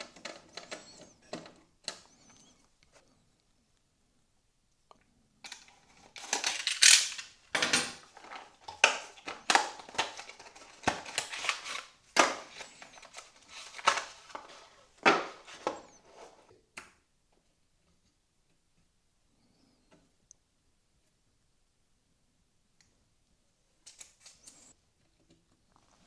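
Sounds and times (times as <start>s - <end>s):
handling crinkles and clatters: 5.4s - 16.0s.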